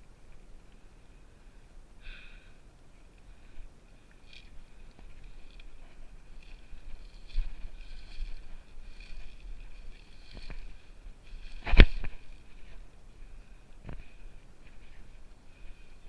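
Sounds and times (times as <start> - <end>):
rustling noise: 4.2 - 16.0.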